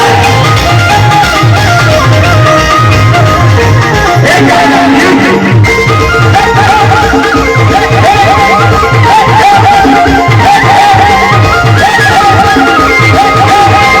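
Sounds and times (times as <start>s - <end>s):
ornamented melody line: 0.0s - 14.0s.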